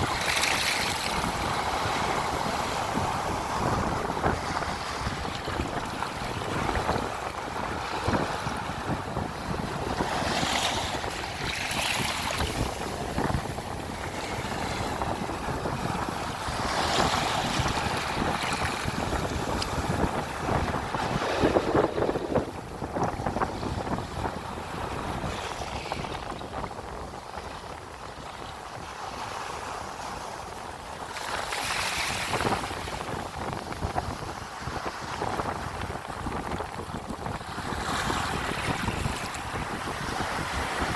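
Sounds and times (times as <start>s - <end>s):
ocean surf washing in: 0.0s - 27.0s
wind gusting on microphone: 0.0s - 40.9s.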